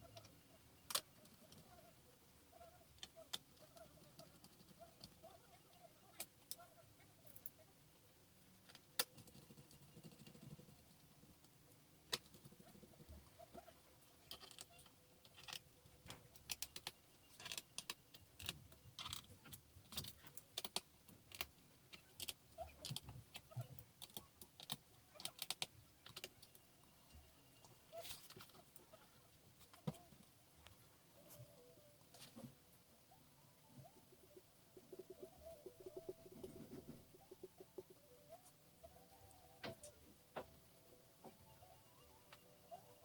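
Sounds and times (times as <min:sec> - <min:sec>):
laptop parts clicking and tapping: 0:14.3 - 0:26.6.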